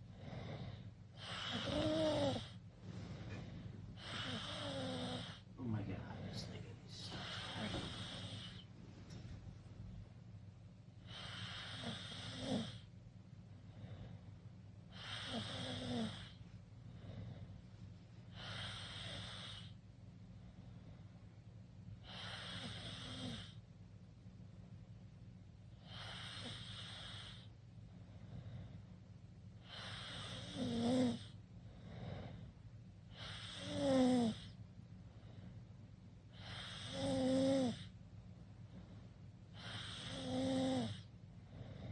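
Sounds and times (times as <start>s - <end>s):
steady low hum: 0.0s - 41.9s
person snoring: 0.5s - 2.6s, 4.0s - 8.6s, 11.1s - 12.9s, 14.9s - 16.4s, 18.4s - 19.8s, 22.0s - 23.6s, 25.8s - 27.5s, 29.6s - 31.3s, 33.1s - 34.5s, 36.3s - 37.9s, 39.6s - 41.1s.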